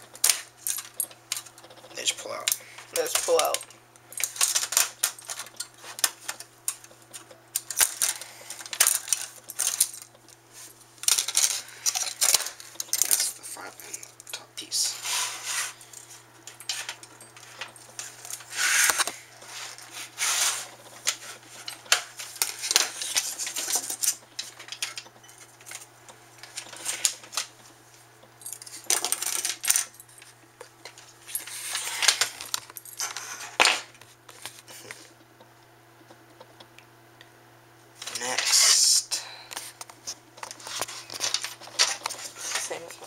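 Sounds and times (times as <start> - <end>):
steady low hum: 0.0 - 43.0
metal and plastic parts clinking: 0.2 - 10.1, 11.0 - 14.9, 28.4 - 33.8, 40.4 - 42.9.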